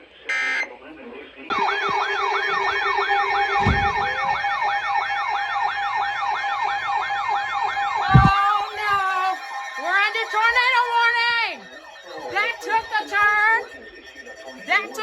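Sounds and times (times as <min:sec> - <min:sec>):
electronic siren wailing: 0:01.5 - 0:15.0
steady tone: 0:01.5 - 0:15.0
low thump: 0:03.6 - 0:05.0.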